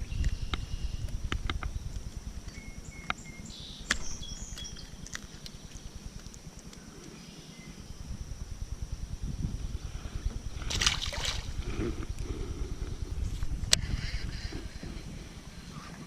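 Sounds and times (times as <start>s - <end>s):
high insect buzz: 0.0s - 16.0s
wind rumbling on microphone: 0.0s - 16.0s
bird chirps: 2.5s - 5.8s.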